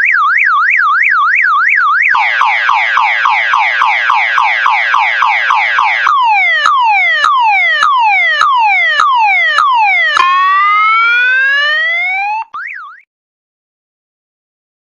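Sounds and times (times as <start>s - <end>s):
electronic alarm siren sweeps: 0.0s - 13.0s
siren rising whoop: 2.2s - 12.9s.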